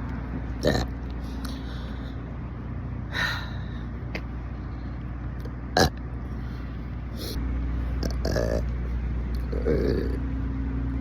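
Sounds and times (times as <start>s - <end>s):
steady low hum: 0.0s - 11.0s
person burping: 0.6s - 1.0s, 5.7s - 6.0s, 8.0s - 8.7s, 9.5s - 10.2s.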